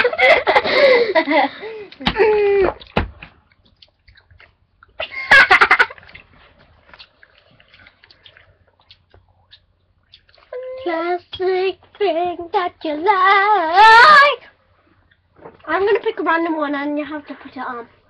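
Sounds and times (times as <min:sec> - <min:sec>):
girls laughing loudly: 0:00.0 - 0:02.6, 0:05.0 - 0:06.0.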